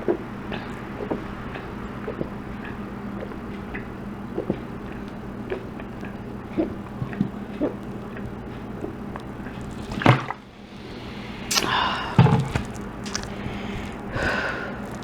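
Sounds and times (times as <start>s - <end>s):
person gulping and swallowing: 0.0s - 10.5s, 11.4s - 15.0s
person breathing: 10.6s - 15.0s.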